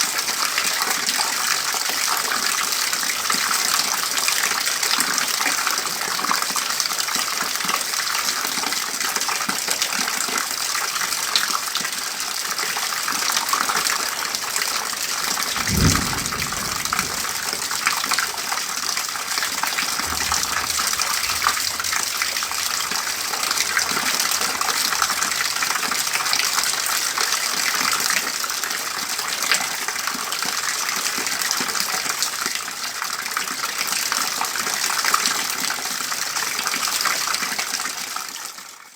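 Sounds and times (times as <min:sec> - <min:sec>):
rainwater splashing into bucket: 0:14.8 - 0:25.2
low thump: 0:15.5 - 0:18.3.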